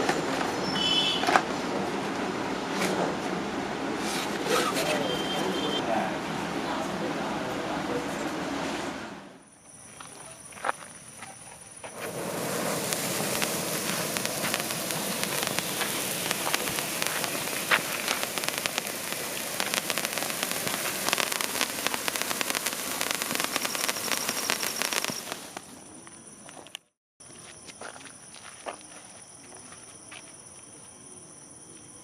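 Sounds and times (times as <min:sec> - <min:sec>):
firework sparks hissing and crackling: 0:11.9 - 0:25.9.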